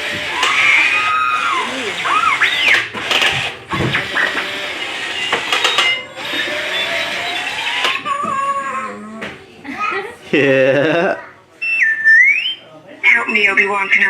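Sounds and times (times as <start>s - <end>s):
small motor whirring: 0.0s - 8.0s
clicks: 0.2s - 1.1s, 5.3s - 6.6s
toy robot electronic beeps: 0.4s - 3.3s.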